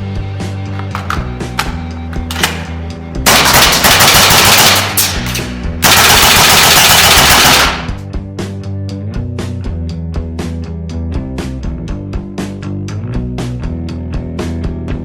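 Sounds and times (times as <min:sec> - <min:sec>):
background music: 0:00.0 - 0:15.0
airsoft rifle firing full-auto: 0:03.3 - 0:08.0.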